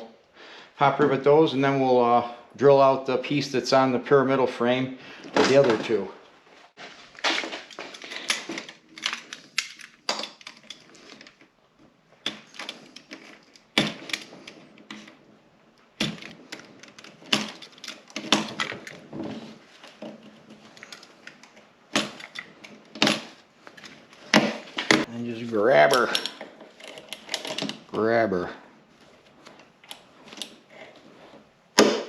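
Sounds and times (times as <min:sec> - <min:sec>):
clicks and rattles of tools handled: 0:07.2 - 0:25.1, 0:25.8 - 0:27.9, 0:29.0 - 0:31.4.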